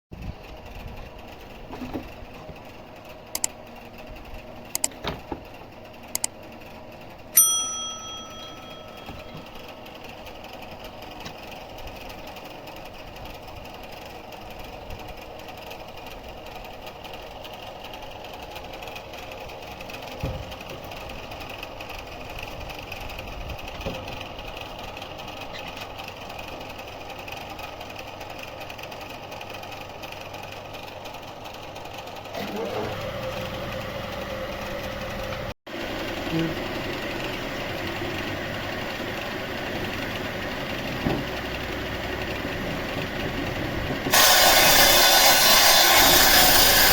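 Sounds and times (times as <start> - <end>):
sawmill machinery running: 0.4 - 46.9
sharp clicks: 3.4 - 3.6, 4.8 - 5.0
ringing metallic clang: 7.4 - 9.6.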